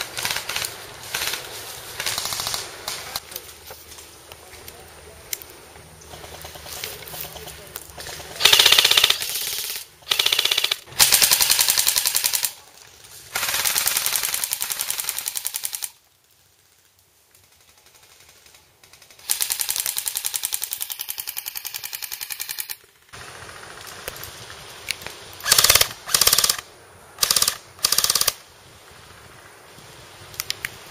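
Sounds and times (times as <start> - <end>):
airsoft gun firing bursts: 8.1 - 12.6, 13.4 - 15.9, 17.9 - 23.4, 25.4 - 26.6, 27.2 - 28.4.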